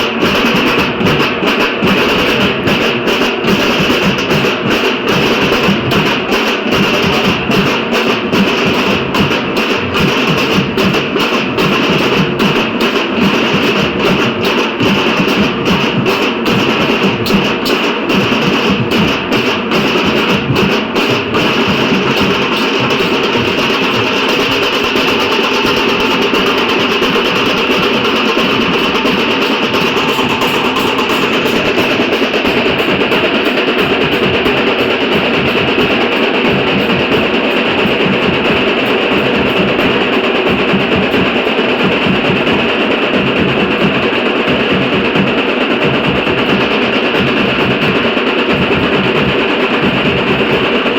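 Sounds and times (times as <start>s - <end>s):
barrel and snare drums playing: 0.0s - 50.9s.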